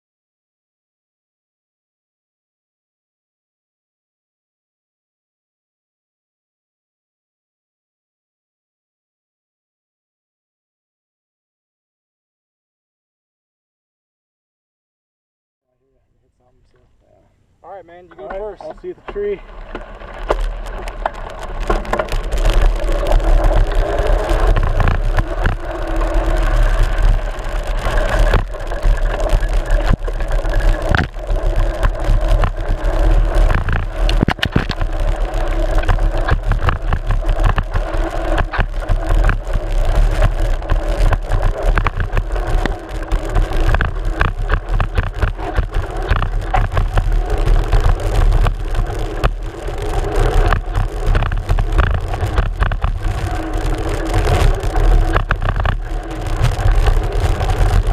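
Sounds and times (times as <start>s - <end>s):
deep rumble: 17.6s - 57.9s.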